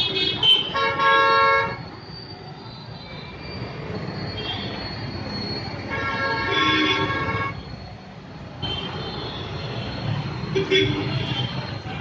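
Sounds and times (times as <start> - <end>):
multi-tone vehicle horn: 0.0 - 1.8, 5.9 - 7.6
traffic rumble: 0.0 - 12.0.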